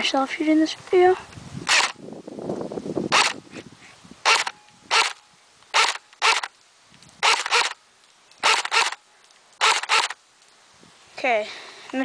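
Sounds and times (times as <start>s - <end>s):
airsoft rifle shots cracking: 3.1s - 3.4s, 4.3s - 6.5s.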